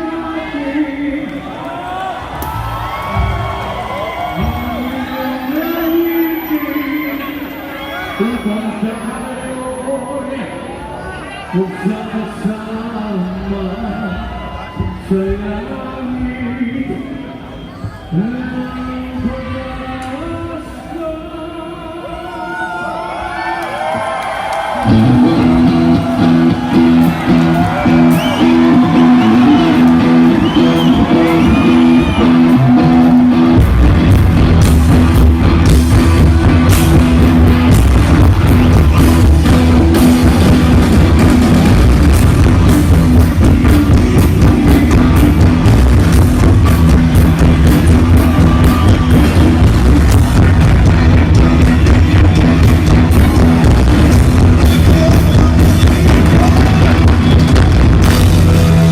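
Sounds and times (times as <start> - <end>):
drums: 1.8 - 6.6, 23.3 - 58.9
rock band playing live: 24.8 - 58.9.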